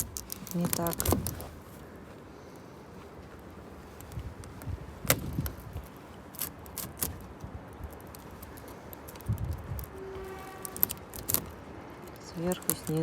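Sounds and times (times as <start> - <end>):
hand tools clicking and clinking: 10.6 - 13.0.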